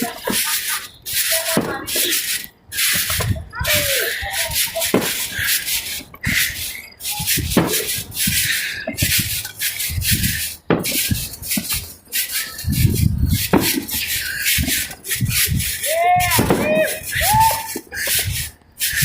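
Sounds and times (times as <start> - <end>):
fireworks sharp bangs: 0.0 - 18.5
fireworks crackling hiss: 0.0 - 19.0
low thuds: 12.6 - 17.5.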